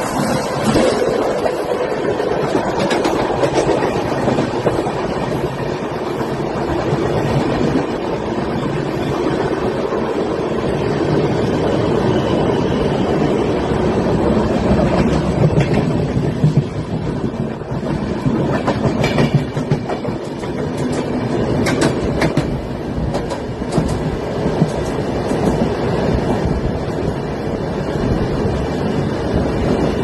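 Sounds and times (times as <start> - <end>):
train wheels clicking over rails: 0.0 - 10.3, 13.9 - 30.0
train rumbling on track: 0.0 - 30.0.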